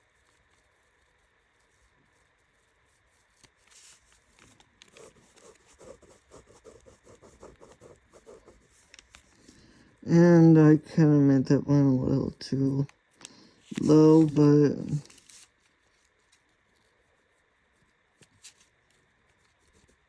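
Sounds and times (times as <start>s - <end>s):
pen scratching on paper: 4.9s - 8.9s.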